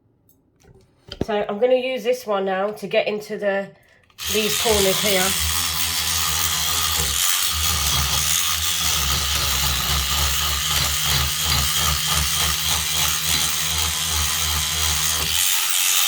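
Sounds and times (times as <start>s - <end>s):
electric cleaning brush buzzing: 4.2s - 16.0s.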